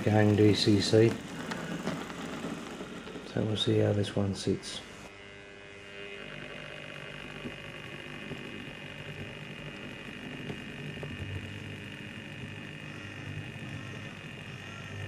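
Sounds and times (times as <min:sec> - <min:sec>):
wheels rattling on rails: 0:00.0 - 0:04.0
model train motor whining: 0:00.0 - 0:15.0.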